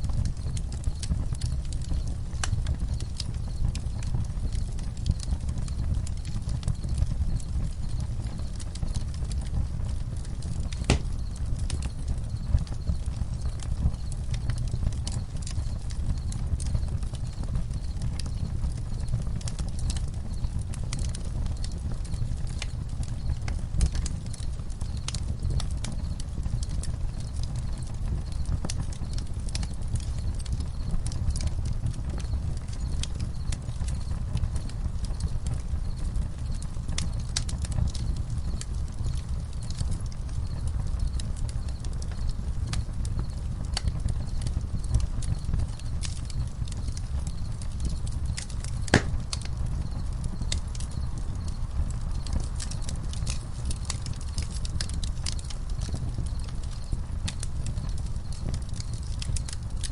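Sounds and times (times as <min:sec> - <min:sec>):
campfire crackling: 0:00.0 - 0:59.9
crickets chirping: 0:40.4 - 0:55.0.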